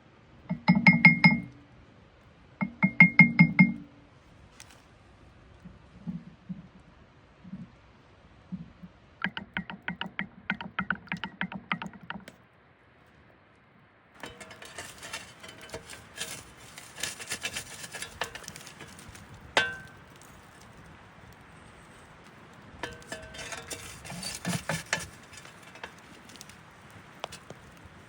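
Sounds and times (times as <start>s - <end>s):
campfire crackling: 4.5s - 4.9s, 14.2s - 28.0s
metallic clink: 14.2s - 20.6s, 22.8s - 26.6s.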